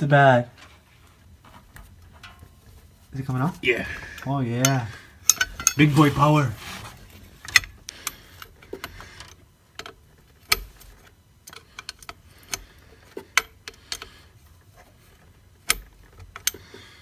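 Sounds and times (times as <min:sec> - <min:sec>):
metal tools clicking and clinking: 0:04.1 - 0:06.4.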